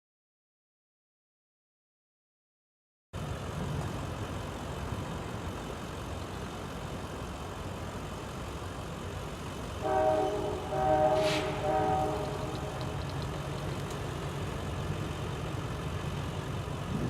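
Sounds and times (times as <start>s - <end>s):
steady low rumble: 3.2s - 17.0s
locomotive air horn: 9.8s - 13.6s.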